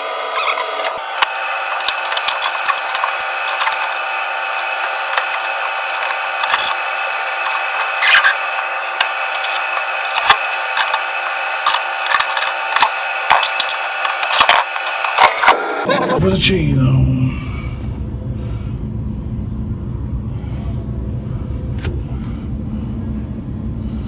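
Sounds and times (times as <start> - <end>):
steady hum: 0.0 - 24.0.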